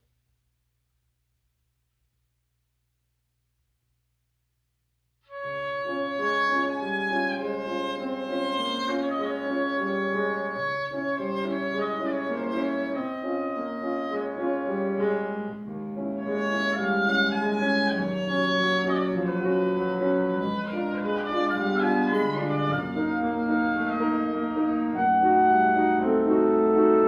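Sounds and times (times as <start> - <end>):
wind quintet playing chamber music: 5.4 - 27.0.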